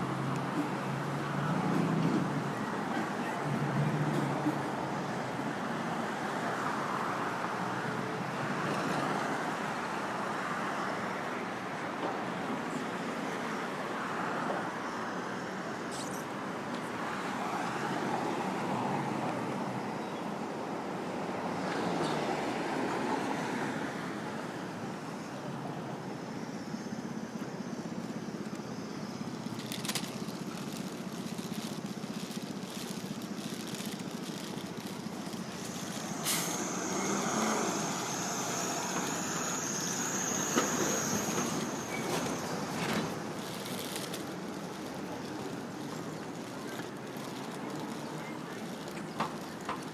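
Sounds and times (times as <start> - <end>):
traffic passing: 0.0 - 49.9
thin high whine: 33.5 - 46.8.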